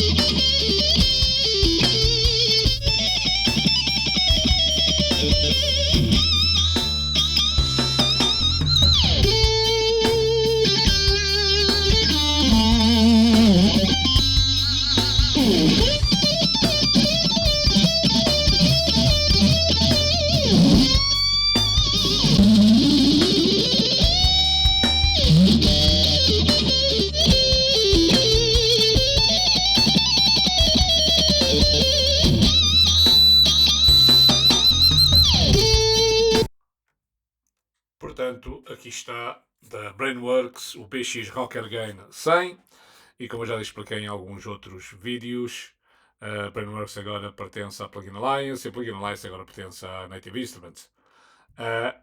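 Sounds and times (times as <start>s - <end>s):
low backing: 0.0s - 36.5s
electric guitar lead melody: 8.7s - 36.5s.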